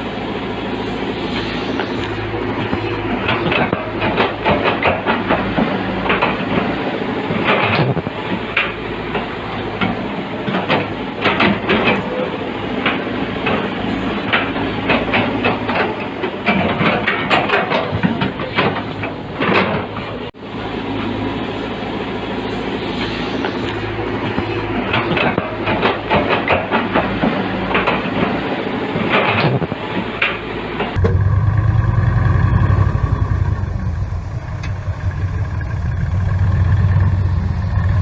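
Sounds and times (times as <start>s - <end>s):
diesel machinery engine drone: 0.0s - 38.0s
metallic clanks and rattles: 2.6s - 6.7s, 7.4s - 12.2s, 12.8s - 20.1s, 24.2s - 31.3s.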